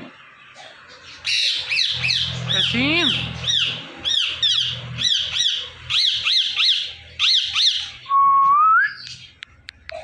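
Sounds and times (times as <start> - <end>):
parakeet squawking: 0.6 - 8.1.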